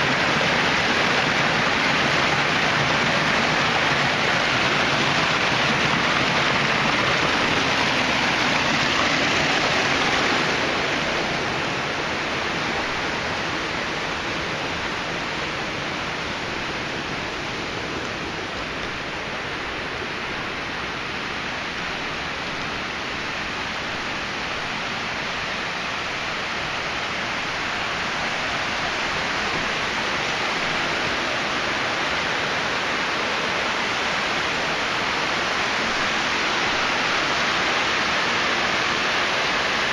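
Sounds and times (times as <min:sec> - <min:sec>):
small waterfall rushing: 0:00.0 - 0:39.9.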